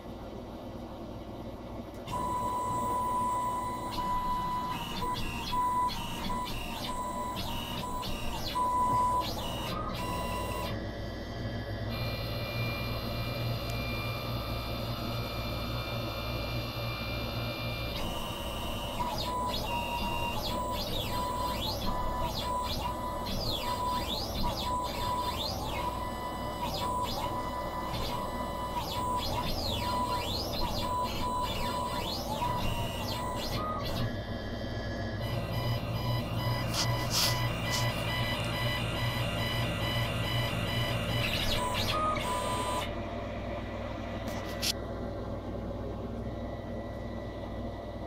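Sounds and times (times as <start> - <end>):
stepper motors whining: 11.9 - 42.9.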